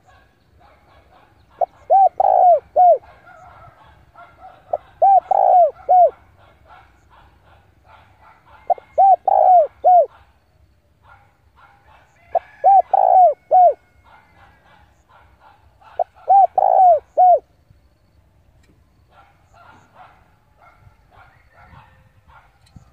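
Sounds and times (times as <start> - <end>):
dove cooing: 0.0 - 10.3, 11.8 - 17.5
faint bird chirping: 0.0 - 22.9.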